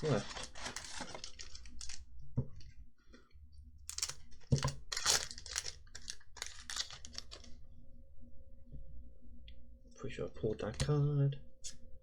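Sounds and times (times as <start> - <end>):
foil wrapper tearing and crinkling: 0.0 - 2.1, 3.9 - 7.6.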